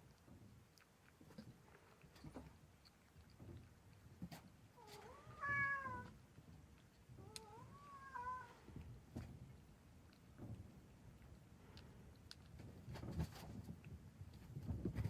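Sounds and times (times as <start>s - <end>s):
kitten meowing: 4.8s - 6.1s, 7.2s - 8.6s.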